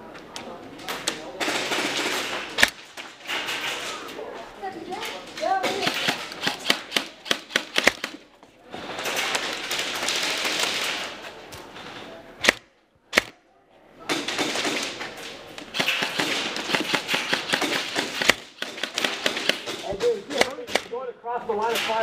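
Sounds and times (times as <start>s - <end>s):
voices and movement: 0.0s - 22.0s
airsoft guns firing: 0.9s - 4.1s, 5.6s - 11.2s, 12.4s - 13.4s, 14.1s - 21.0s.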